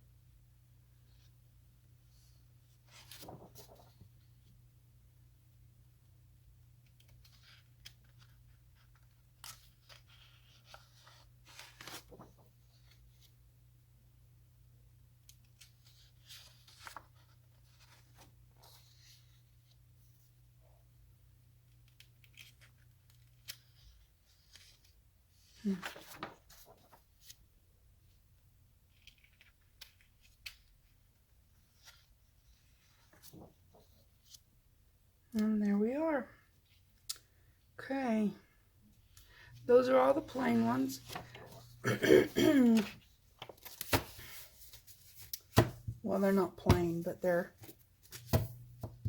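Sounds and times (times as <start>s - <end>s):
paper sheets rustling: 2.9s - 4.2s, 7.2s - 13.3s, 25.6s - 27.4s, 39.8s - 41.8s, 42.7s - 45.8s.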